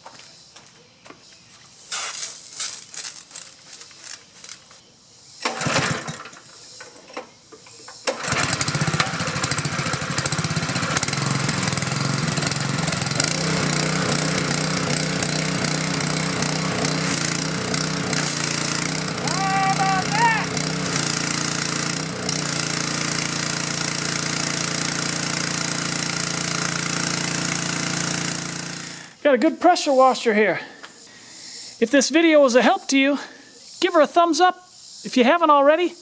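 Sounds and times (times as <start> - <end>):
pressure washer spray hissing: 1.7 - 3.2, 11.2 - 29.1
small engine running: 5.4 - 6.6, 8.1 - 29.2
recoil starter pull: 5.4 - 29.2.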